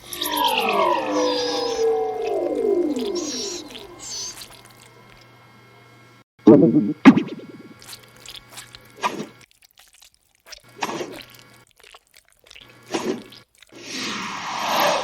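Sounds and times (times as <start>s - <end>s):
wet squelches: 0.0s - 5.3s, 7.1s - 14.0s
wet slosh: 7.1s - 13.9s.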